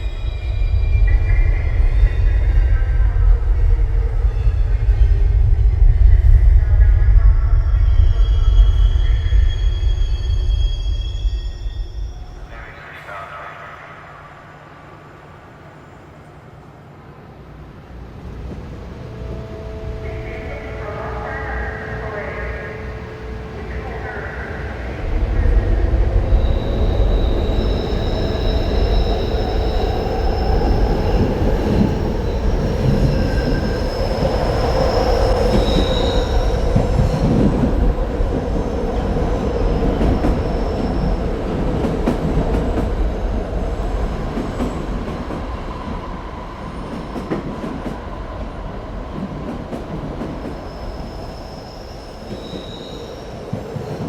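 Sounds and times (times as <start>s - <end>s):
metallic squeals: 8.0s - 12.6s, 26.3s - 37.4s.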